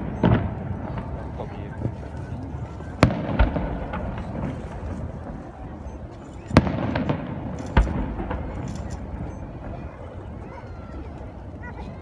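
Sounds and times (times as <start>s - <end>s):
fireworks bursting: 0.0s - 11.3s
crowd murmur: 0.0s - 12.0s
small firework cracks: 2.9s - 5.7s, 6.4s - 9.8s.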